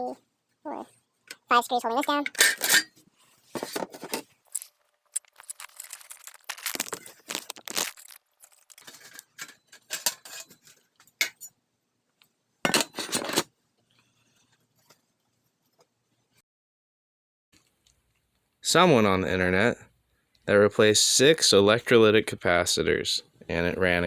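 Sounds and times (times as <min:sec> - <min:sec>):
small metal parts clinking: 0:04.1 - 0:11.6.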